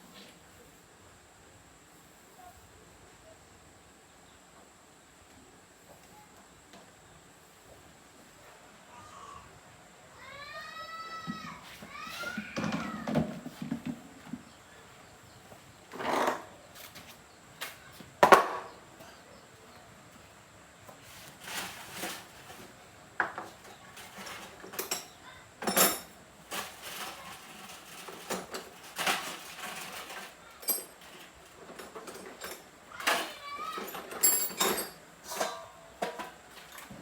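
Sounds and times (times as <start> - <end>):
hard objects knocking and clinking: 33.8 - 36.2.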